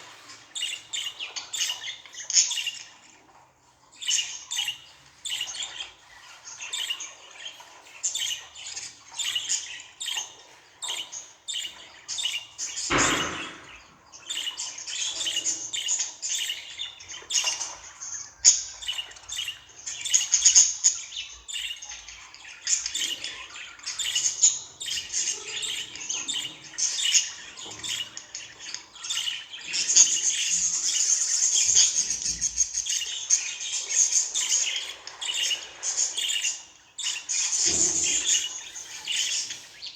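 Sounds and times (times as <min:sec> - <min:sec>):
budgerigar chirping and warbling: 0:18.5 - 0:33.5.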